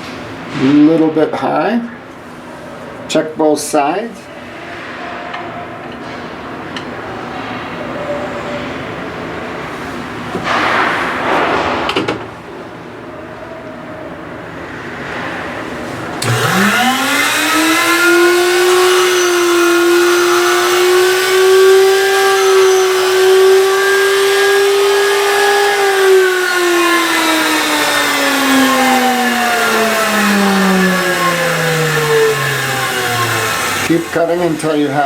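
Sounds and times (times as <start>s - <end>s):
grinding wheel motor whine: 16.2s - 35.0s.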